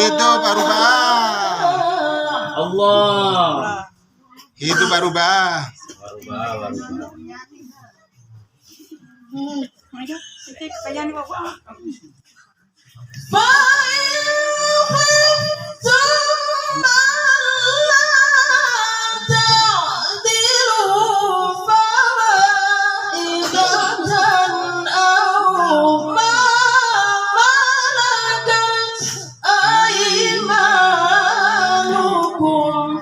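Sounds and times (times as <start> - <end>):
woman reciting melodically: 0.0 - 5.2, 13.1 - 33.0.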